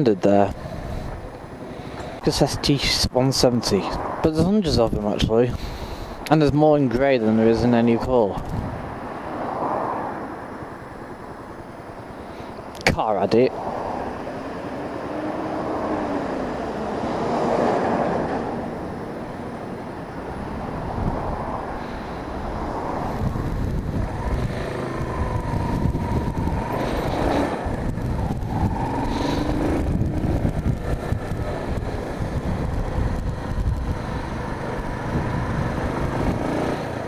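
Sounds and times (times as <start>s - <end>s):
road traffic passing: 0.0s - 37.0s
wind buffeting microphone: 6.8s - 10.8s, 20.1s - 37.0s.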